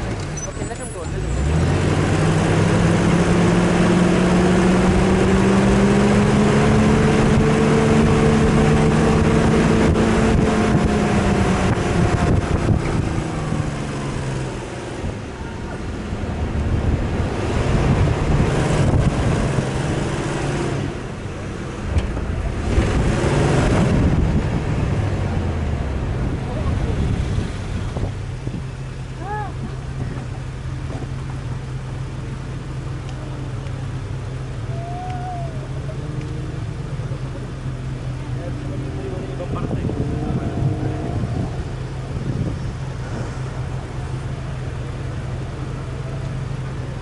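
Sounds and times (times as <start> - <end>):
vehicle engine revving under load: 0.0 - 47.0
steady rushing noise: 1.8 - 30.6.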